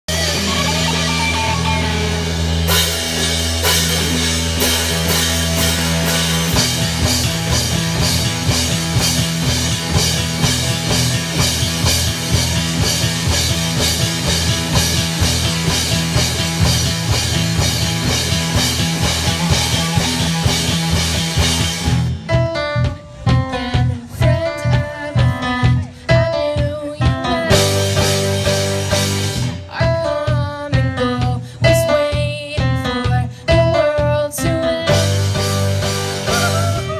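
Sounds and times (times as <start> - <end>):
rock band playing: 0.0 - 36.9
picked guitar notes: 0.1 - 30.0, 34.4 - 36.9.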